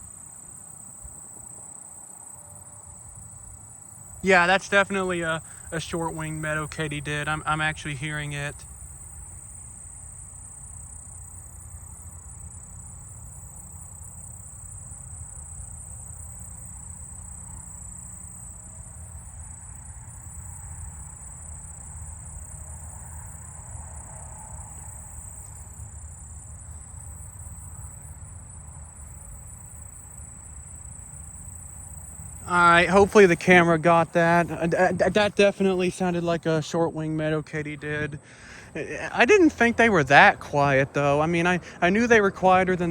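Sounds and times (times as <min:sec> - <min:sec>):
faint katydid song: 0:00.0 - 0:42.9
insect trilling: 0:00.0 - 0:42.9.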